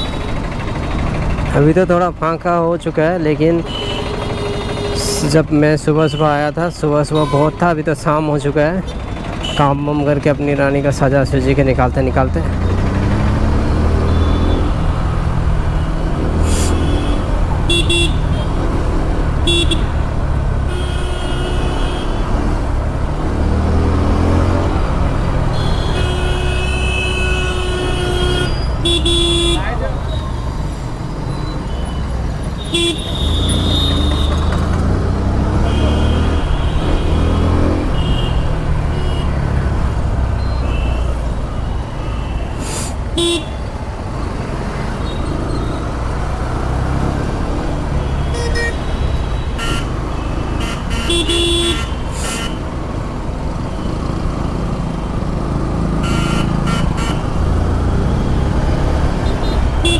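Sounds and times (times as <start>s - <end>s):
vehicle horns honking: 3.6s - 7.9s, 8.8s - 10.3s, 12.7s - 22.8s, 23.9s - 30.6s, 31.7s - 43.8s, 45.0s - 53.0s, 55.8s - 59.9s.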